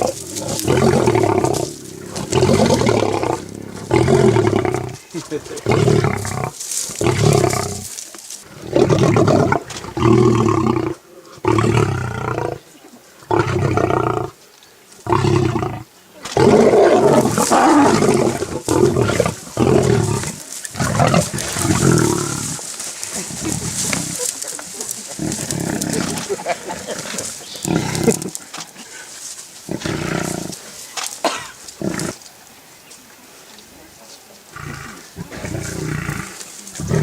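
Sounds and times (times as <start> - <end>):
big cat roaring: 0.0 - 5.0, 5.6 - 7.9, 8.5 - 12.6, 13.3 - 14.4, 15.1 - 22.6, 25.1 - 27.0, 27.6 - 28.4, 34.5 - 37.0.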